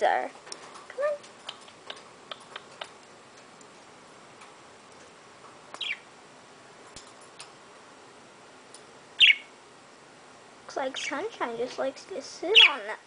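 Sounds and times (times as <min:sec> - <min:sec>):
budgerigar chirps: 0:05.8 - 0:06.1, 0:09.2 - 0:09.5, 0:12.6 - 0:12.8.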